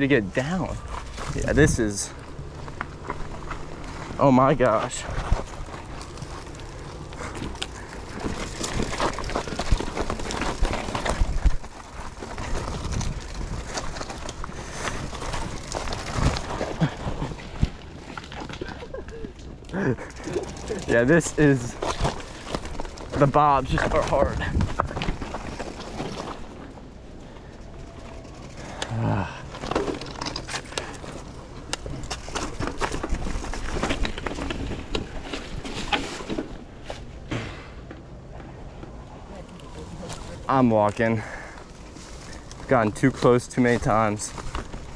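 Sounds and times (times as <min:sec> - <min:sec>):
bike rattling and knocking: 0:00.0 - 0:37.0, 0:40.1 - 0:44.9
tyres rolling over dirt and rock: 0:00.0 - 0:37.3, 0:39.6 - 0:44.9
wind rumbling on microphone: 0:08.1 - 0:17.8, 0:21.7 - 0:26.5.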